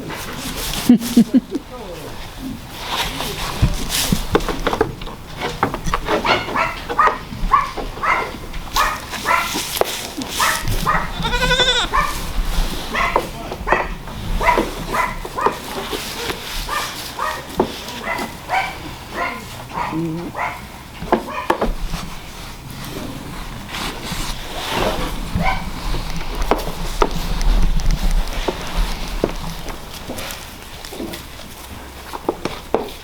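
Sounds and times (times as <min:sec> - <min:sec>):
goats bleating: 0:10.8 - 0:12.2.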